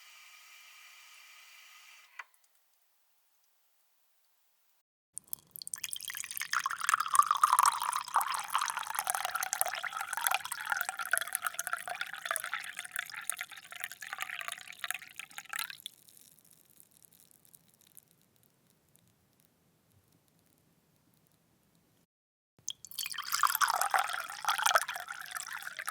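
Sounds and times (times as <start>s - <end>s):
water pouring into a glass: 5.2s - 18.0s, 22.6s - 25.9s
faint trickles and drips: 5.2s - 21.4s, 22.6s - 25.9s.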